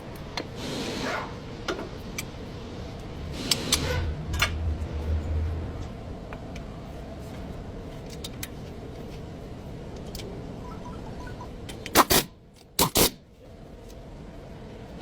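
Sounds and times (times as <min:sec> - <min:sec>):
car engine rumbling: 0:01.9 - 0:10.6.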